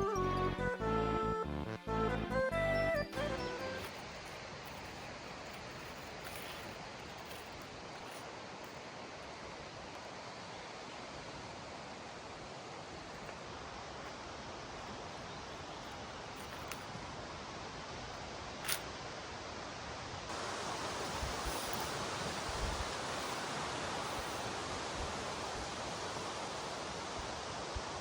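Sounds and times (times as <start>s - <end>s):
music: 0.0s - 4.4s
outdoor rushing hiss: 2.7s - 28.0s.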